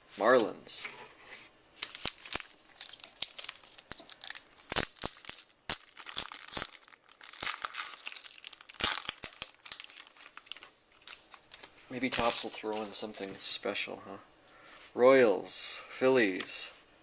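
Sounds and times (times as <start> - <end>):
wrapper crinkling and tearing: 1.8 - 13.2.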